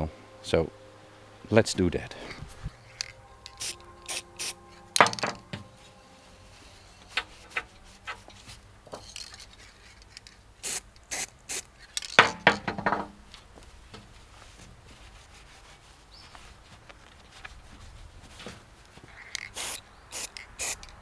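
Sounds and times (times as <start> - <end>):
metallic clinks and knocks: 5.0 - 5.7, 7.0 - 10.4.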